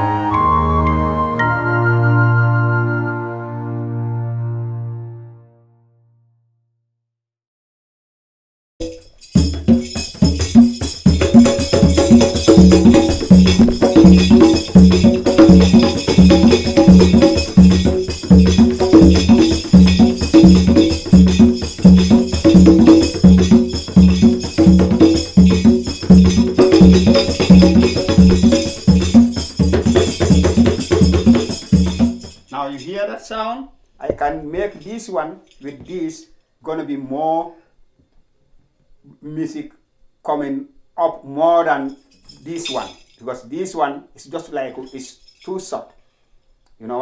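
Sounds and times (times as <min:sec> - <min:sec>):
percussive beat with jingling: 0:08.8 - 0:33.0, 0:42.0 - 0:43.2.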